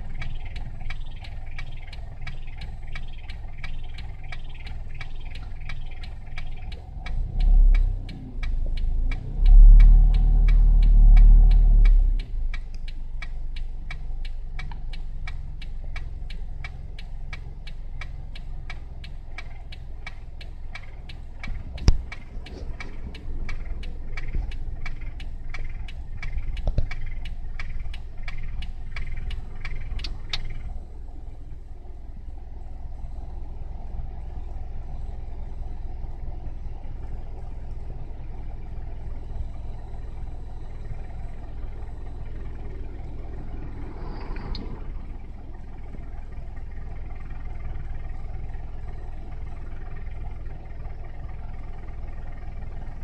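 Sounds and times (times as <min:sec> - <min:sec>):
sharp regular clicking: 0:00.0 - 0:30.8
car engine idling: 0:00.0 - 0:53.0.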